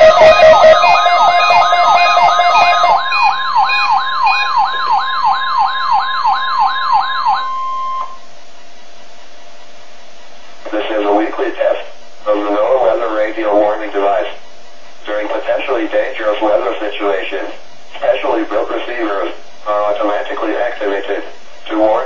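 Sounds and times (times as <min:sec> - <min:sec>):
steady warning alarm tone: 0:00.0 - 0:08.3
warbling siren alarm: 0:00.0 - 0:08.3
radio hiss: 0:08.2 - 0:22.0.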